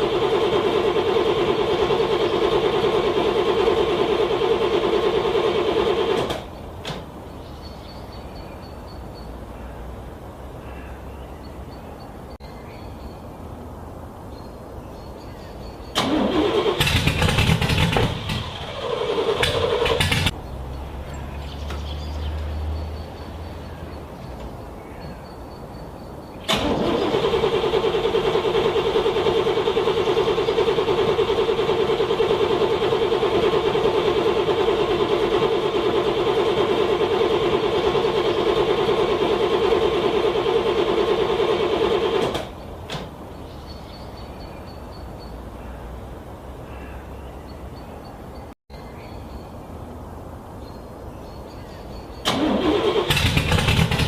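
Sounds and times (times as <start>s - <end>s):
starter motor cranking engine: 0.0s - 6.6s, 16.0s - 20.4s, 26.5s - 42.6s, 52.2s - 54.0s.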